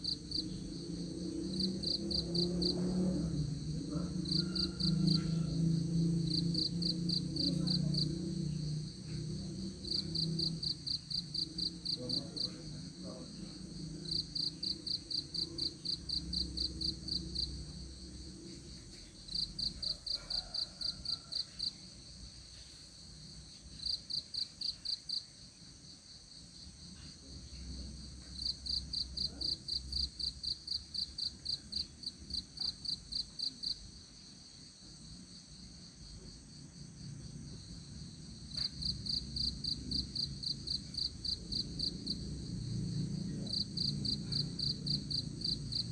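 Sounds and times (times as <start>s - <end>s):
low drone: 0.0s - 19.8s, 38.4s - 45.9s
insect chirping: 0.0s - 45.9s.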